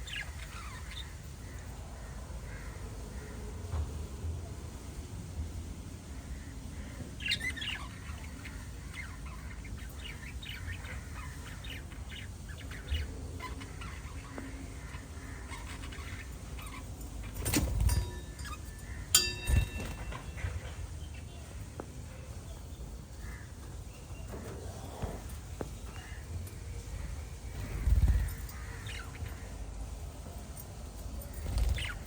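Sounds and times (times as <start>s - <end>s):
budgies chirping: 0.0s - 1.6s, 6.4s - 26.2s, 31.4s - 32.0s
knocks and clatters: 19.2s - 20.8s.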